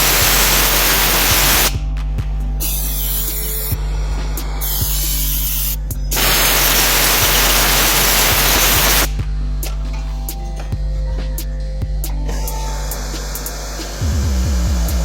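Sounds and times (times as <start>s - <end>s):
loud spray hiss: 0.0s - 1.8s, 2.6s - 3.8s, 4.6s - 9.1s
background music with beat: 0.0s - 15.0s.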